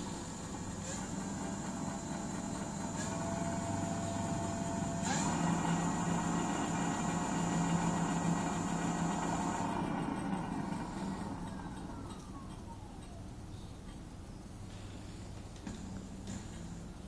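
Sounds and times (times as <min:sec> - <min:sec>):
electric motor whine: 0:00.0 - 0:12.4
thin high whine: 0:00.0 - 0:13.8.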